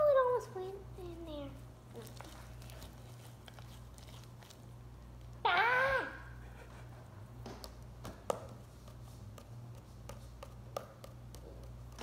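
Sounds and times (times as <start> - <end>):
low steady hum: 0.0 - 12.0
slime being kneaded and stretched: 1.9 - 5.8.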